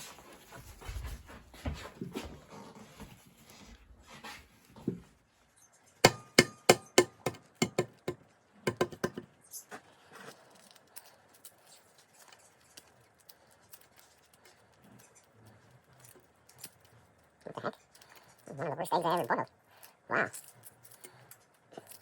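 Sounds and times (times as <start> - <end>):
egg tapping on hard surface: 6.0 - 9.3.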